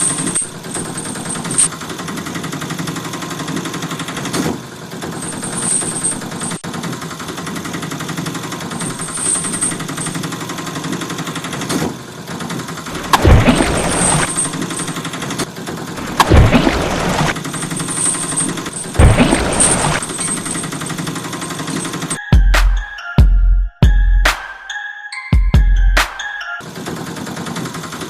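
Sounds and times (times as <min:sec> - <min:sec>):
truck engine rattling: 0:00.0 - 0:22.2.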